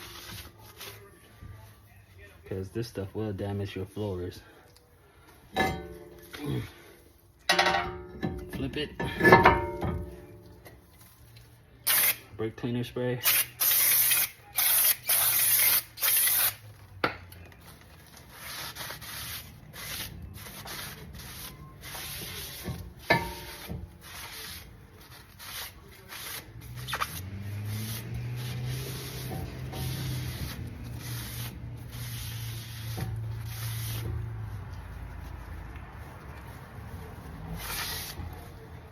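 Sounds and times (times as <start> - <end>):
rubbing and wiping: 17.9 - 38.9.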